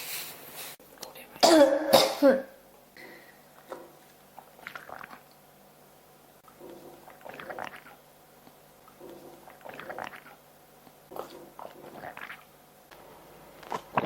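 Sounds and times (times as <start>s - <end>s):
girl coughing: 1.4s - 2.6s
crackly throat and mouth sounds: 3.6s - 5.4s, 6.4s - 12.5s, 13.6s - 14.0s.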